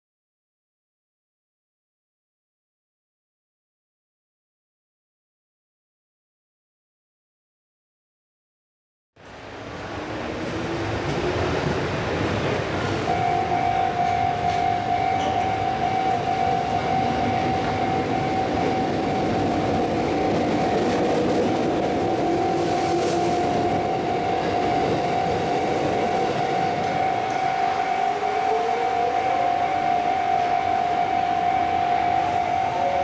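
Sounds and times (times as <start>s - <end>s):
train rumbling on rails: 9.2s - 33.0s
level-crossing alarm: 10.4s - 33.0s.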